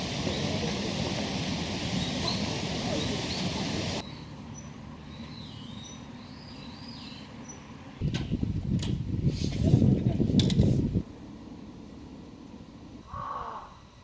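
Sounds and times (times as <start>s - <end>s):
outdoor rushing noise: 0.0s - 5.0s
small birds chirping: 1.8s - 7.7s.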